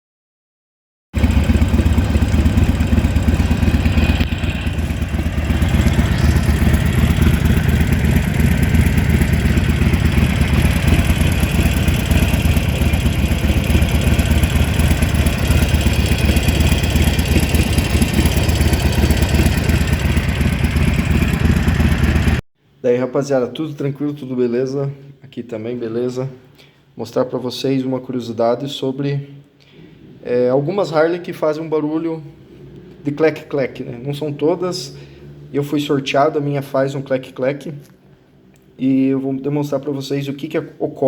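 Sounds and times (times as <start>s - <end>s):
motorcycle engine idling: 1.2s - 22.4s.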